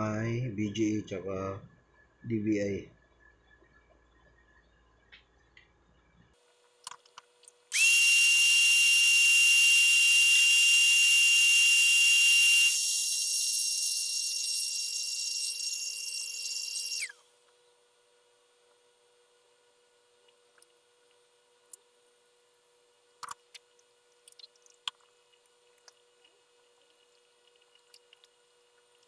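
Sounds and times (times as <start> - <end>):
high-speed electric motor whining: 7.7 - 17.2.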